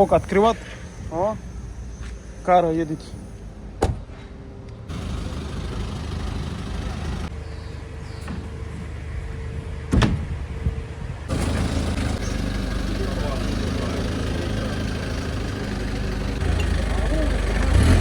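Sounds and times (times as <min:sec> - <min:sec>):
vehicle engine running: 0:04.9 - 0:09.9, 0:10.6 - 0:18.0.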